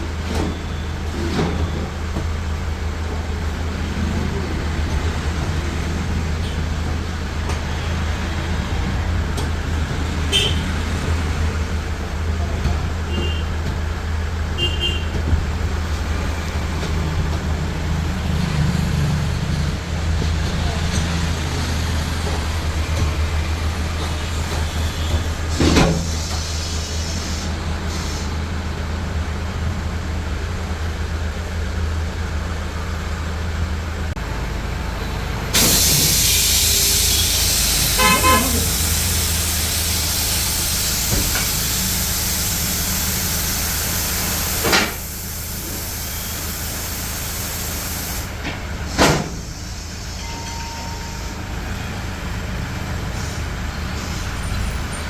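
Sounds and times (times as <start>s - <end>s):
traffic engine hum: 0.0s - 50.2s, 51.2s - 55.0s
car horn toot: 10.3s - 10.7s, 13.1s - 13.5s, 14.6s - 15.2s, 37.9s - 38.8s
loud hiss: 23.9s - 28.5s, 35.5s - 50.4s.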